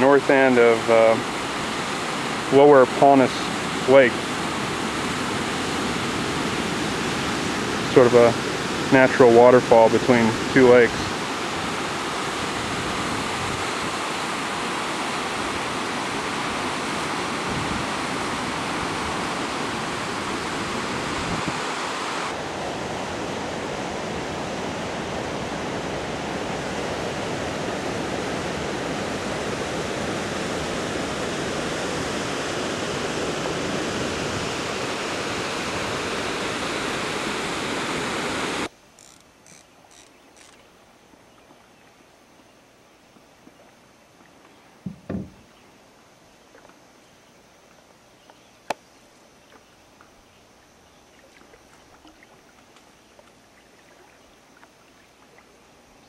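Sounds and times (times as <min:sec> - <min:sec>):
waterfall rushing: 0:00.0 - 0:38.7
faint knocks: 0:44.8 - 0:45.4.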